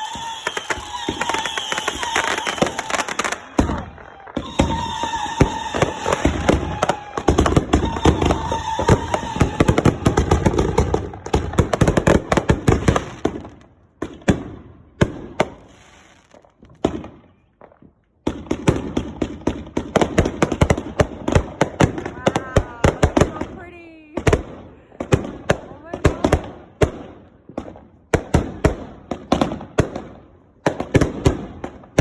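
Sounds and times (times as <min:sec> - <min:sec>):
whistle-like tone: 0:00.0 - 0:02.8
fireworks bangs and crackle: 0:00.0 - 0:32.0.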